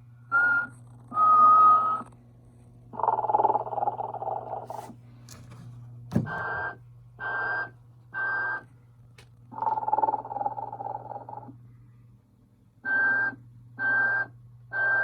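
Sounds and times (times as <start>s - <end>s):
electronic snoring: 9.6s - 11.6s.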